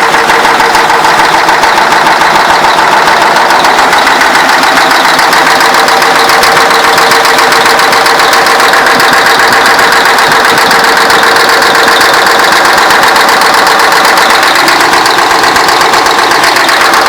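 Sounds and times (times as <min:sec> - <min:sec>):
diesel engine running: 0:00.0 - 0:17.0
fast even engine knocking: 0:00.0 - 0:17.0.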